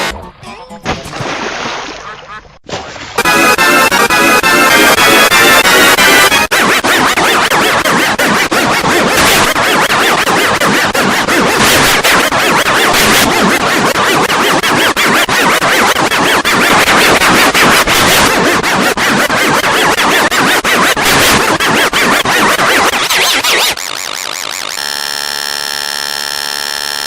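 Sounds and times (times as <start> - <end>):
stuttering sound effects collage: 3.2 - 27.0.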